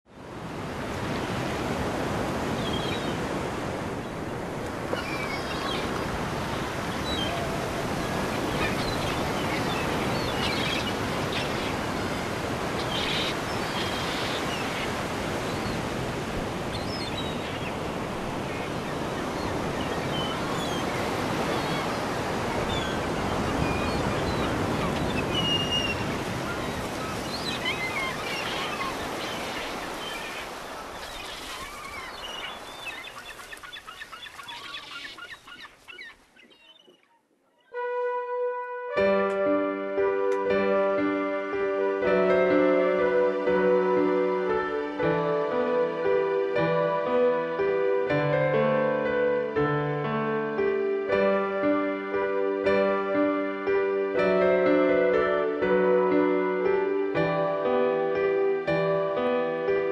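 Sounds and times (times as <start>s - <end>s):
ocean surf washing: 0.1s - 36.5s, 39.0s - 59.9s.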